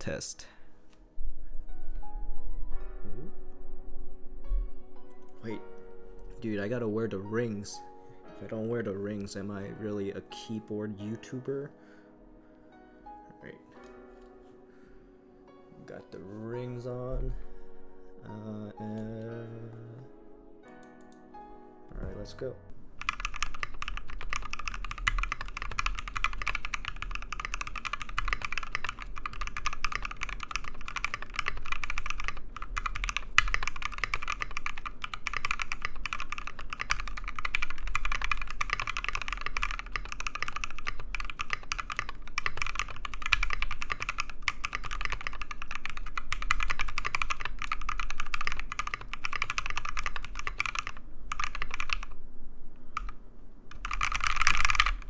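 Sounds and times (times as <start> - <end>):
mechanical keyboard typing: 23.0 - 52.2, 52.9 - 55.0.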